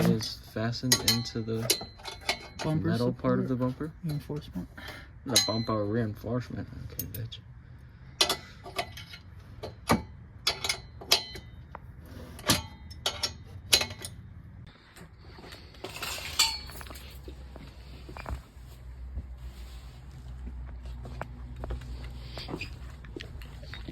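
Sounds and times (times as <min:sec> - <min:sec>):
hand tools clinking on metal: 0:00.0 - 0:03.1, 0:05.3 - 0:05.8, 0:06.9 - 0:07.4, 0:08.2 - 0:11.7, 0:12.4 - 0:14.2, 0:15.8 - 0:17.3.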